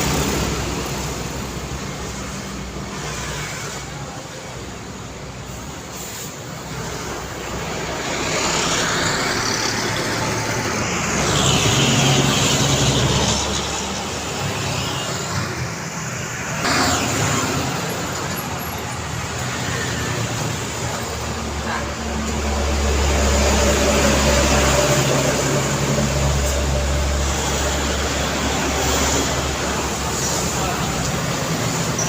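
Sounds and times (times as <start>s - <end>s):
cars and trucks driving by: 0.0s - 32.0s.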